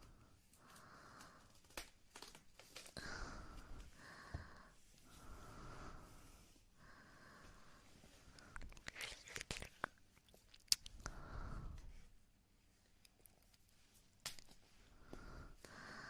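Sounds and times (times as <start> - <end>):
soft airy breaths: 0.0 - 1.8, 2.8 - 10.0, 10.9 - 16.0
wet mouth clicks: 8.4 - 11.1.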